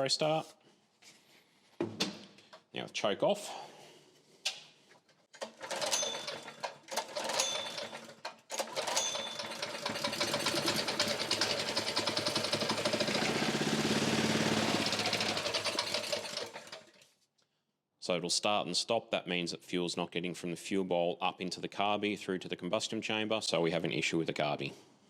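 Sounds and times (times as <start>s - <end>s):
recoil starter pulls: 5.3s - 17.1s
small engine running: 5.8s - 17.0s.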